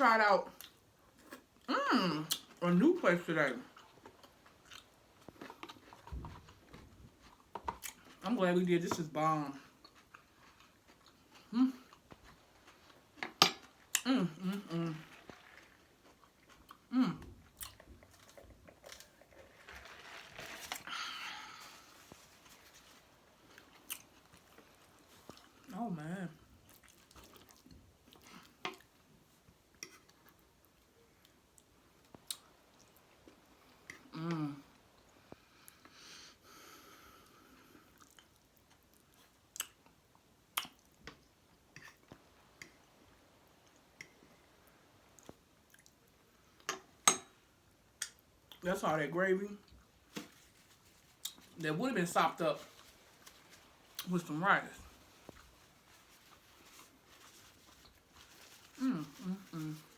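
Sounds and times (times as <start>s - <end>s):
person chewing with wet clicks: 3.7s - 8.1s, 15.2s - 19.2s, 23.6s - 25.7s, 26.6s - 29.0s, 37.8s - 44.2s, 45.1s - 46.9s, 47.9s - 48.6s
chewing and mouth smacking: 26.7s - 28.9s, 37.9s - 42.8s, 45.2s - 46.1s.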